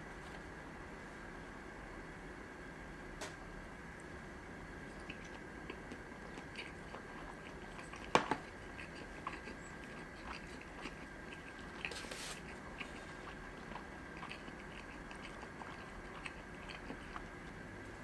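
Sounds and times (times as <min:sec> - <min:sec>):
faint high hum: 0:00.0 - 0:18.0
close chewing and wet mouth sounds: 0:04.8 - 0:18.0.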